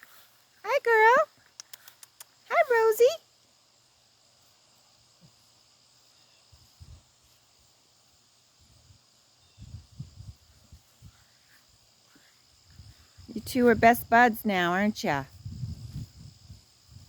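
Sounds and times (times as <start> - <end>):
crickets trilling: 0.0 - 17.0.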